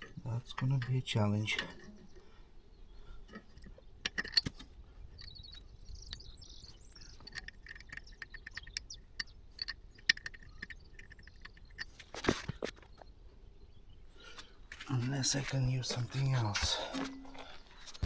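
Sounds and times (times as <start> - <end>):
hand tools clinking on metal: 0.0 - 2.2, 14.8 - 18.0.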